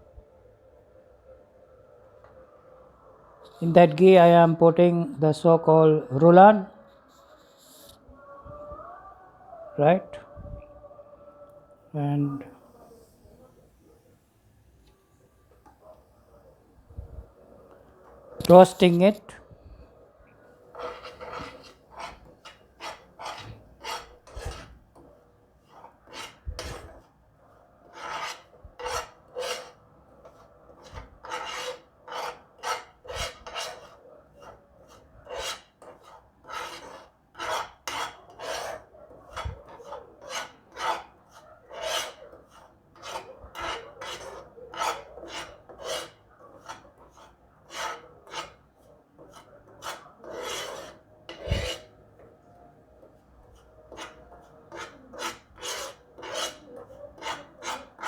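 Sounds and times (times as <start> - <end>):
spoon scraping pan: 20.6 - 27.2, 27.8 - 52.4, 53.0 - 58.0.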